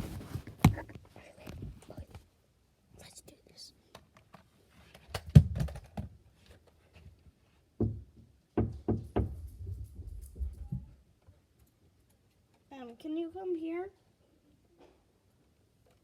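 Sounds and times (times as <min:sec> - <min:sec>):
knocking on a door: 0:07.8 - 0:10.9.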